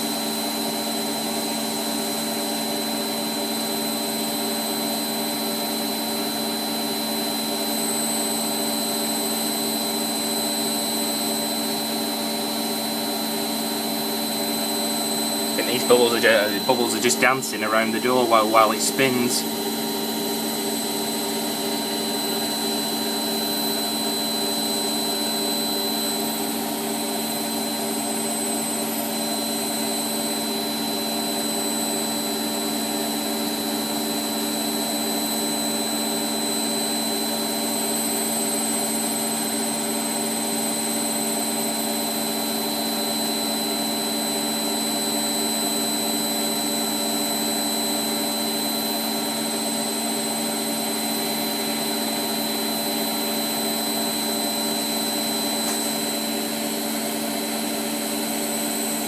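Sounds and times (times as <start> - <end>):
high-pitched whine: 15.4 - 19.7.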